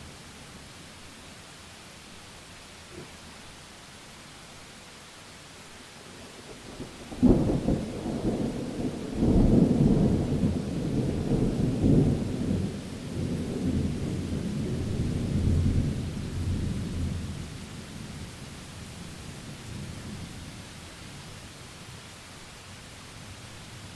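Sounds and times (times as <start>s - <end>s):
rain hiss: 0.0s - 23.9s
thunder crack and rumble: 6.8s - 17.4s.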